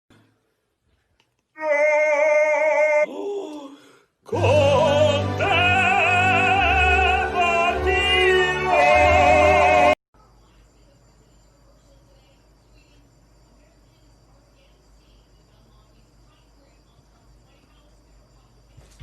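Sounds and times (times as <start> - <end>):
operatic singing: 4.3 - 10.0
orchestral accompaniment: 4.3 - 10.0.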